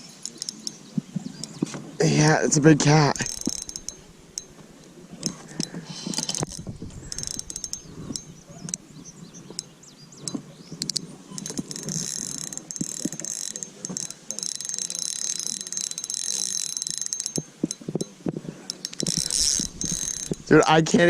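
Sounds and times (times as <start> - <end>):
fishing reel cranking and clicking: 2.1 - 4.6, 5.2 - 8.8, 10.8 - 20.8.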